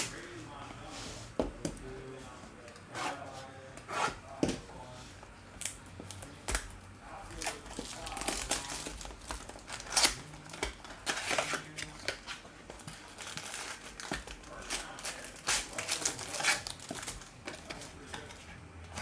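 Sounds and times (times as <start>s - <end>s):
plastic wrap crinkling: 5.2s - 18.3s
cardboard packaging tearing: 5.6s - 12.4s, 13.0s - 18.1s.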